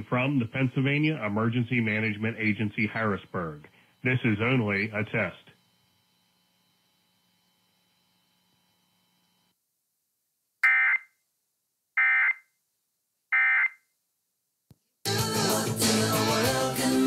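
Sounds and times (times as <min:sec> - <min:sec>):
music: 0:15.1 - 0:17.0.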